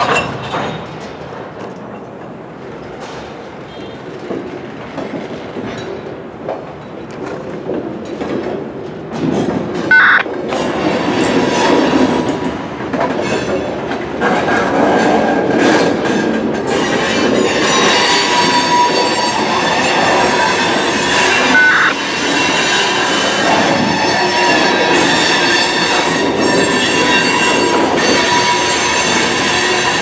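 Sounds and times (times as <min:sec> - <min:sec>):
freight train cars rolling: 0:00.0 - 0:30.0
wheels clicking over rail joints: 0:00.0 - 0:30.0
high-pitched wheel squeal: 0:17.7 - 0:22.7.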